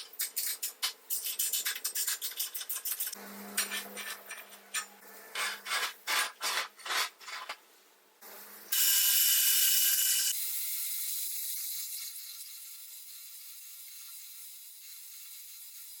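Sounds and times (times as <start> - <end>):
metal being filed by hand: 0.0 - 7.6
power tool high-pitched hiss: 8.7 - 16.0.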